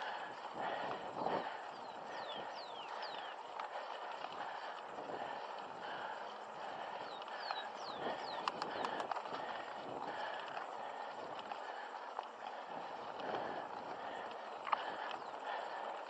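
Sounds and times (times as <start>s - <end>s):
bike tyres on dirt trail: 0.0s - 16.0s
bike clicks and knocks: 8.3s - 9.5s.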